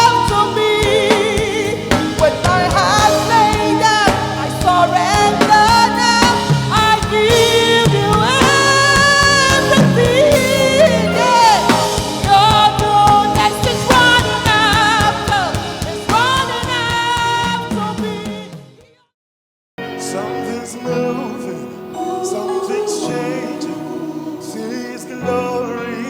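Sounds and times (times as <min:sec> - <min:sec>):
person singing long sliding notes: 0:00.0 - 0:18.6
gospel band accompaniment: 0:00.0 - 0:18.9, 0:19.8 - 0:26.0.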